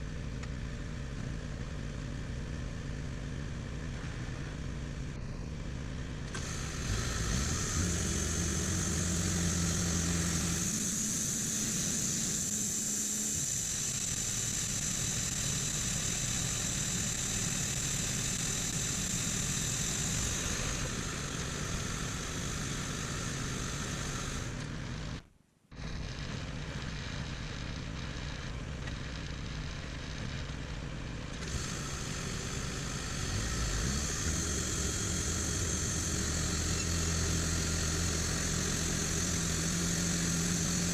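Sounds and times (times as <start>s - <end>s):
sawmill engine running: 0.0s - 40.9s
high-pitched saw whine: 6.4s - 24.6s, 31.4s - 40.9s.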